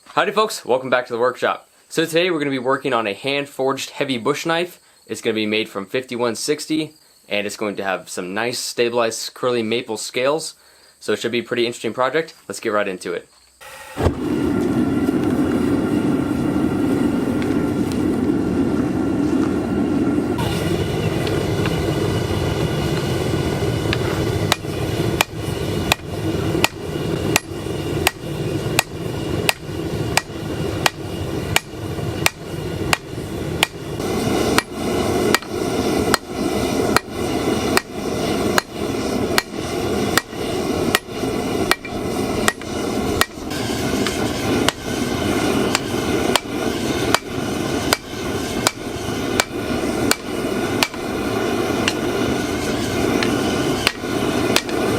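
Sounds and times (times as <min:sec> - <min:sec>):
hammer blows on anvil: 0:23.8 - 0:38.8, 0:40.2 - 0:45.0, 0:45.7 - 0:51.1.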